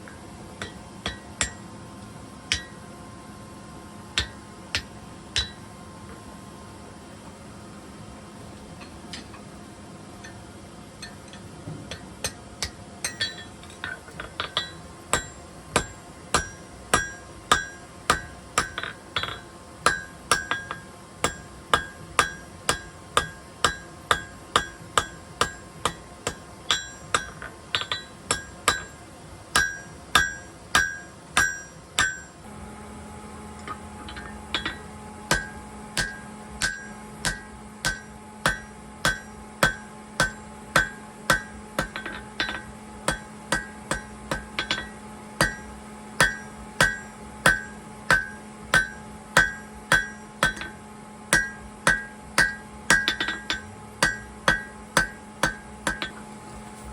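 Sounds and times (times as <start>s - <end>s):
steady low hum: 0.0s - 56.9s
hammer blows on anvil: 33.6s - 56.4s.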